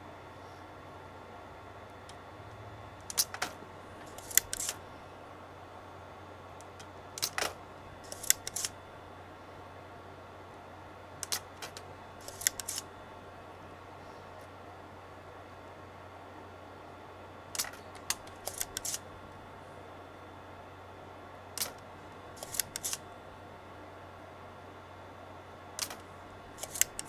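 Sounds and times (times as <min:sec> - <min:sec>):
steady low hum: 0:00.0 - 0:27.0
small tools clicking and snapping: 0:03.0 - 0:04.8, 0:06.7 - 0:08.8, 0:11.2 - 0:12.8, 0:17.6 - 0:19.0, 0:22.4 - 0:23.0, 0:25.8 - 0:27.0.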